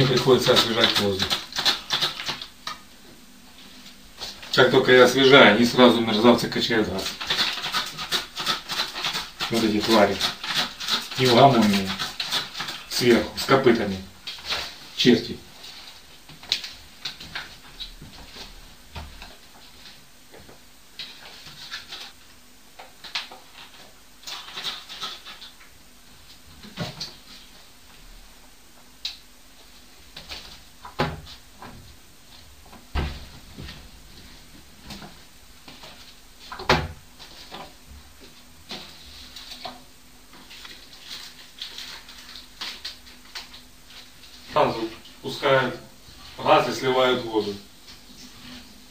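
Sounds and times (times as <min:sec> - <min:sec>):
scraping rustles: 0:37.2 - 0:48.9.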